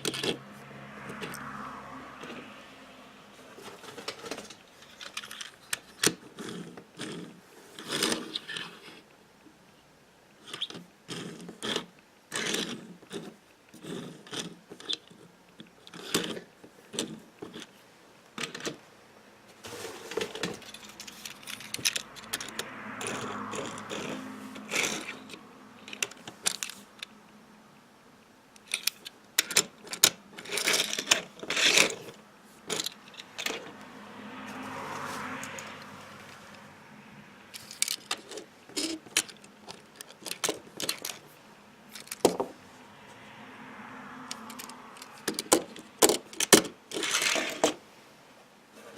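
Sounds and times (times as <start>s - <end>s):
toy car scraping: 0.0s - 0.4s, 3.6s - 9.1s, 10.4s - 17.8s, 19.6s - 27.1s, 28.6s - 33.8s, 37.5s - 42.5s, 44.3s - 47.8s
toy cars clicking and clinking: 0.0s - 0.4s, 4.0s - 9.0s, 10.4s - 17.8s, 20.2s - 27.1s, 28.6s - 33.8s, 35.4s - 36.6s, 37.5s - 41.3s, 41.9s - 42.5s, 44.3s - 47.8s.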